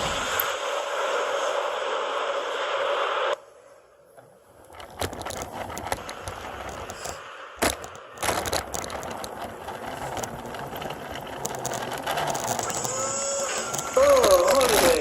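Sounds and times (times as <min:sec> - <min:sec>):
plastic toy being handled: 0:04.6 - 0:15.0.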